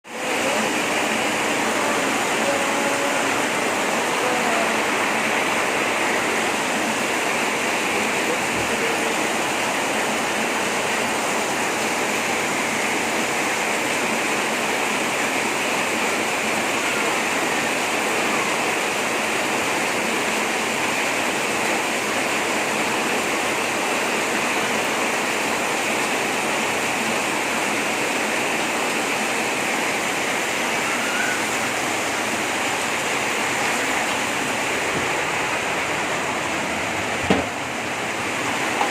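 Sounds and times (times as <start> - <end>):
heavy rain pouring: 0.0 - 38.9.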